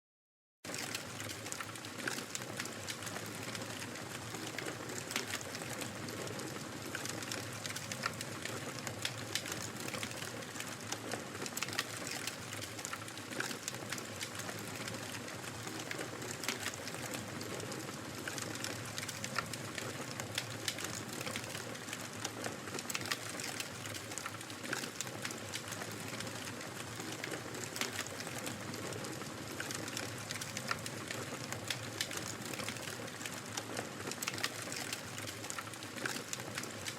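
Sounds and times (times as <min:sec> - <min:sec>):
wood fire crackling: 0:00.7 - 0:36.9.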